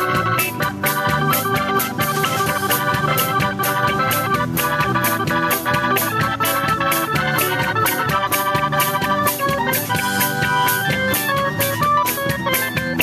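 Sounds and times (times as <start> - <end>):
drum kit beat: 0.0 - 13.0
organ playing: 0.0 - 13.0.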